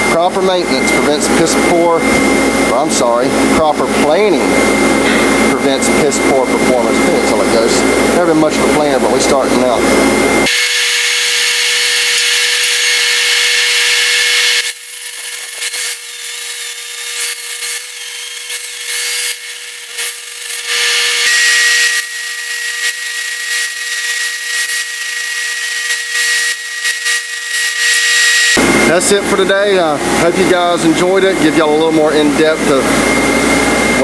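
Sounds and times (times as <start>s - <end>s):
high-pitched whine: 0.0s - 34.0s
power grinder grinding metal: 10.4s - 28.6s.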